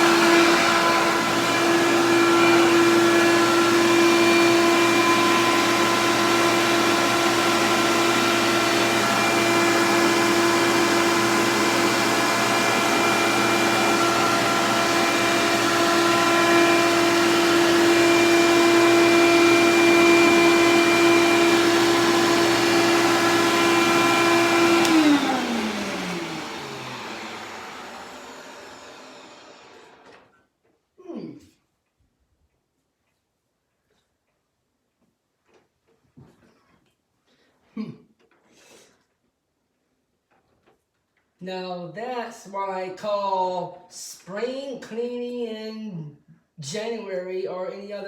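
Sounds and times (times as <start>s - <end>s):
vacuum cleaner running: 0.0s - 30.3s
vacuum motor winding down: 0.0s - 30.3s.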